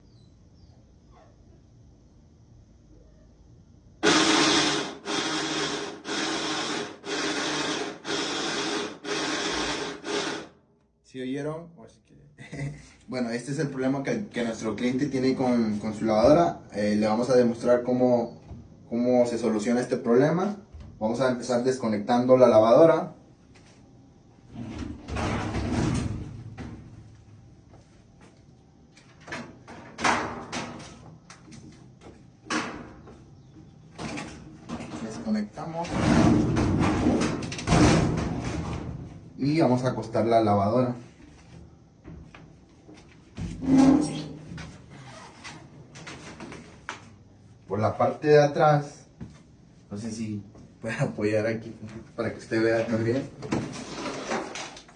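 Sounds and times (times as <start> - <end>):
sharp knocks and bangs: 35.9 - 39.1.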